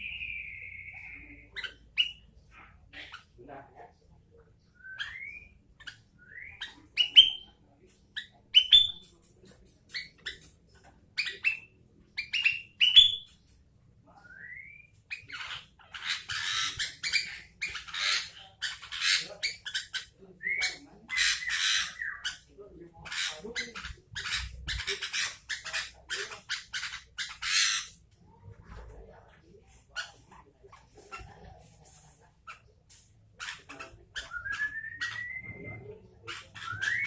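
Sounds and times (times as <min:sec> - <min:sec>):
bird rasping chatter: 0:05.0 - 0:13.6, 0:15.0 - 0:28.1, 0:29.7 - 0:35.4, 0:36.2 - 0:37.0.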